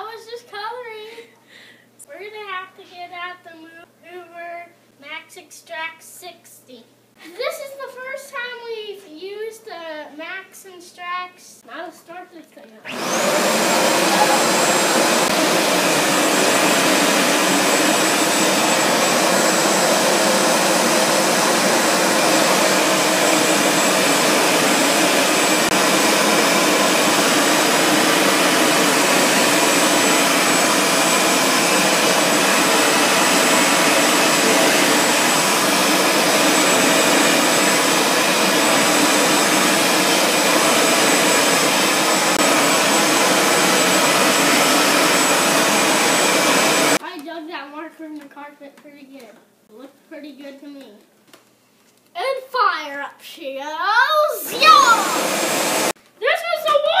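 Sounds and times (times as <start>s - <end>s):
carpet cleaner motor running: 12.9s - 47.0s, 54.5s - 56.0s.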